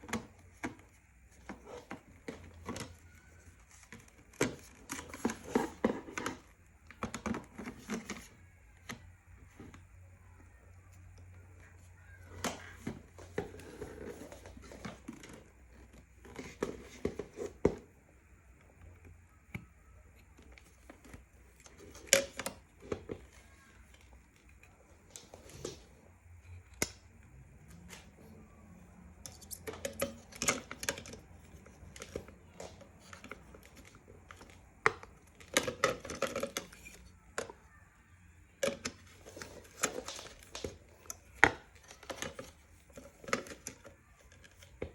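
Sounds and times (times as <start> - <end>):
plastic parts clicking and knocking: 0.0 - 9.9, 18.6 - 25.8, 26.5 - 27.2, 29.2 - 37.7, 38.5 - 44.9.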